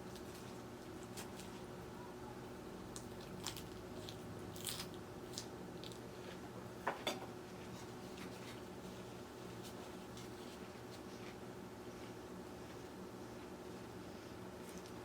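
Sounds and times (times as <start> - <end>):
faint steady hum: 0.0 - 15.0
person chewing crunchy vegetables: 2.8 - 6.5.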